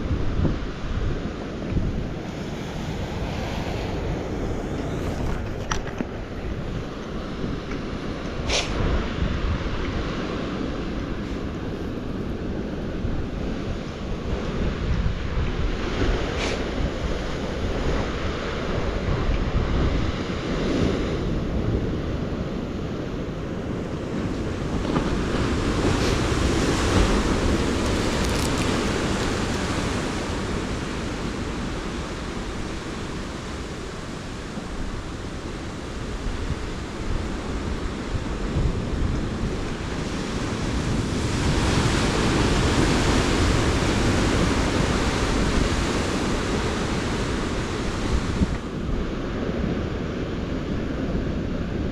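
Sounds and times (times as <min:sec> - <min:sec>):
ocean surf: 0:00.0 - 0:51.9
wind buffeting microphone: 0:00.0 - 0:51.9.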